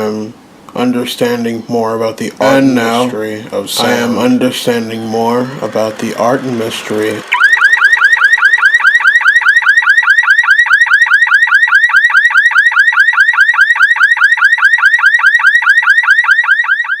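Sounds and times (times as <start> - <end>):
electronic chirping alarm tone: 3.8 - 17.0.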